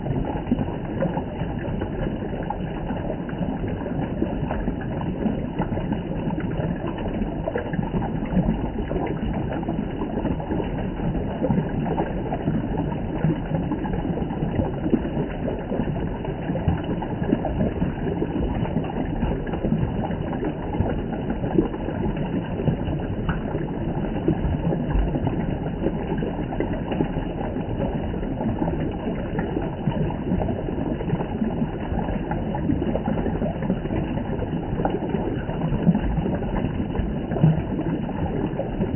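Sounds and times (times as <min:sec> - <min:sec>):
spring water flowing and splashing: 0:00.0 - 0:38.9.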